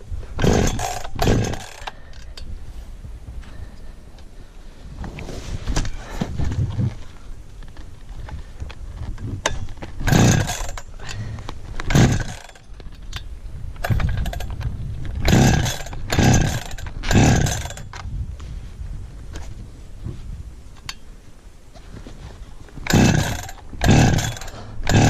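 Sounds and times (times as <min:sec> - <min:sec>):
chainsaw revving: 0:00.4 - 0:02.0, 0:10.0 - 0:11.2, 0:11.8 - 0:12.6, 0:15.2 - 0:17.9, 0:22.8 - 0:25.0.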